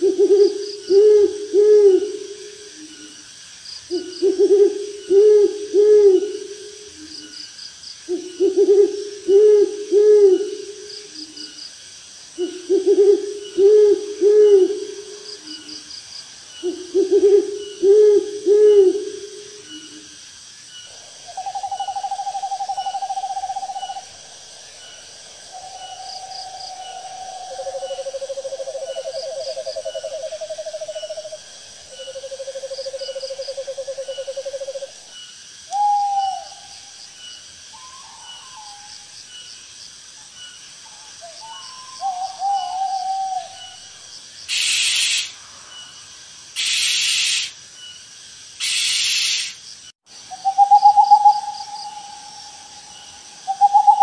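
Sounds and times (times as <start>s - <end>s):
owl trilling and hooting: 0.0s - 2.2s, 3.9s - 7.2s, 8.1s - 10.7s, 12.4s - 15.8s, 16.6s - 20.0s, 20.9s - 24.2s, 24.8s - 34.9s, 35.7s - 36.8s, 37.8s - 39.1s, 40.9s - 43.9s, 44.5s - 45.4s, 46.6s - 47.6s, 48.6s - 49.6s, 50.4s - 54.0s
insects chirping: 0.0s - 54.0s
harsh hissing bursts: 44.5s - 45.5s, 46.5s - 47.6s, 48.6s - 49.8s.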